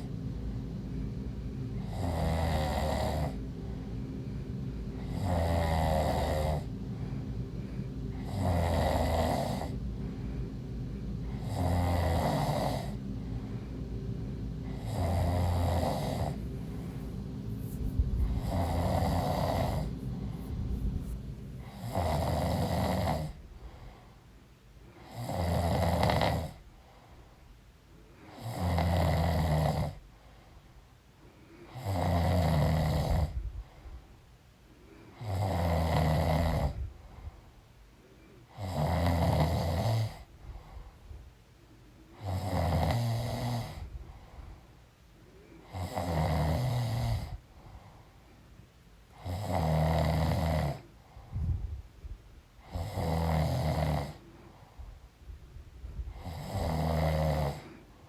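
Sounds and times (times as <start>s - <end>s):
woman snoring: 1.8s - 3.6s, 5.0s - 6.7s, 7.6s - 9.8s, 11.2s - 13.5s, 14.6s - 23.5s, 25.0s - 26.6s, 28.3s - 30.0s, 31.7s - 33.4s, 35.2s - 36.8s, 38.5s - 40.3s, 42.2s - 43.9s, 45.6s - 47.4s, 49.2s - 50.9s, 52.6s - 54.3s, 56.1s - 57.8s.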